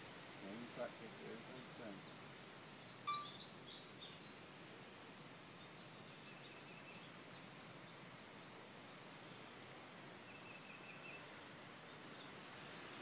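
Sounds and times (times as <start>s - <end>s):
outdoor background hiss: 0.0s - 13.0s
high bird chirps: 3.0s - 3.9s.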